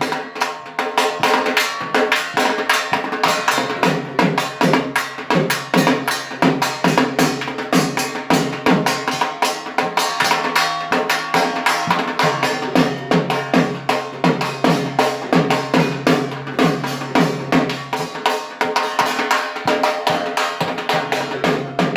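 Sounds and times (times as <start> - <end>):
barrel drum beaten with sticks: 0.0 - 21.9.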